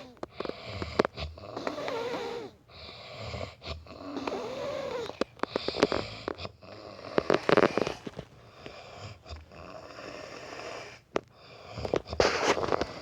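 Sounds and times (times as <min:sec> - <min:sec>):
man snoring: 0:00.0 - 0:08.0
soft wheezy breathing: 0:00.0 - 0:13.0.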